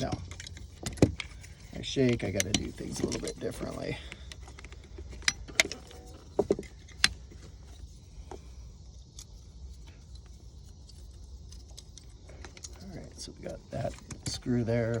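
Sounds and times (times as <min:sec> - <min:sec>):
small parts clicking and clinking: 0:00.0 - 0:15.0
steady low hum: 0:00.0 - 0:15.0.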